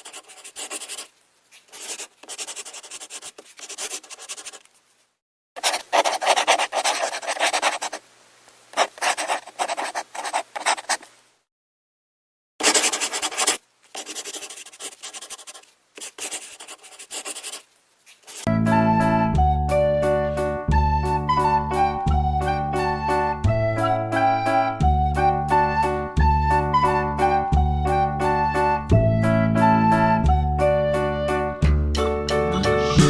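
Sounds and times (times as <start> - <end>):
drawing tool scratching paper: 0.0 - 1.1, 1.7 - 4.7, 5.6 - 8.0, 8.8 - 11.1, 12.6 - 18.5
piano music: 18.5 - 33.0.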